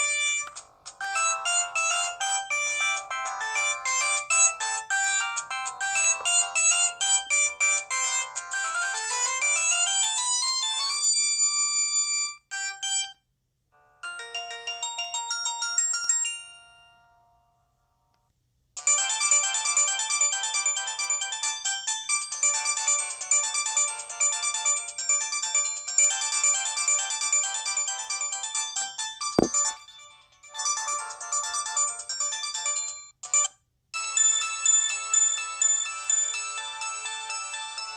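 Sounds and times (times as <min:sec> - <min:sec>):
mobile phone ringtone melody: 0:00.0 - 0:11.2.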